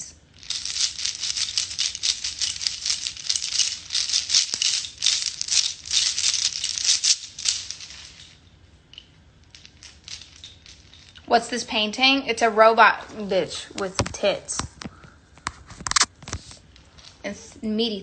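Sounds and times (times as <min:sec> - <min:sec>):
beads rattling: 0:00.2 - 0:11.4.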